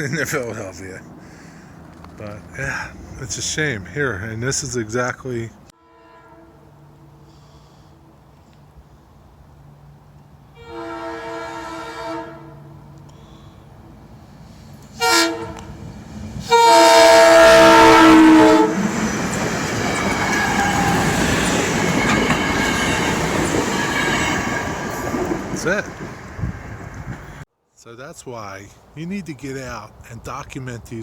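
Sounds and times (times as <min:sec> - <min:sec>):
train horn chord: 0:05.7 - 0:08.4, 0:10.6 - 0:13.5, 0:14.9 - 0:15.7, 0:16.5 - 0:18.8
train wheel and rail noise: 0:06.6 - 0:27.4.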